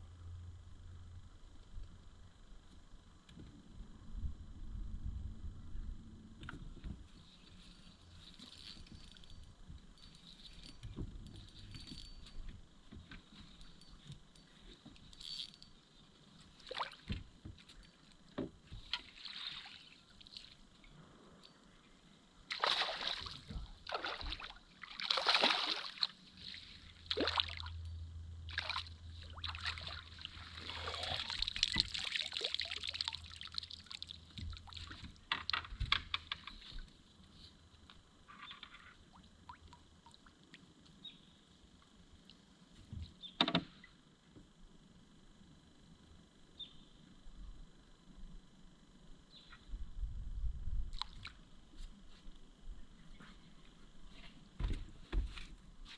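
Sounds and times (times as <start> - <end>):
low steady hum: 0.0 - 55.9
water splashing around boat: 18.7 - 20.6, 22.5 - 27.8, 28.5 - 35.3.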